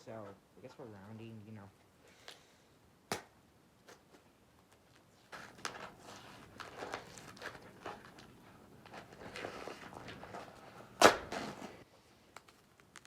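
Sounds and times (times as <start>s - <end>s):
package crackling and tearing: 4.6s - 11.2s.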